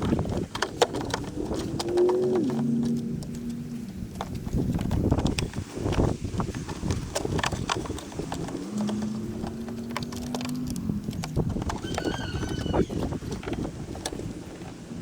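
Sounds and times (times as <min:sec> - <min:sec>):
short high squeak: 0:11.8 - 0:13.1.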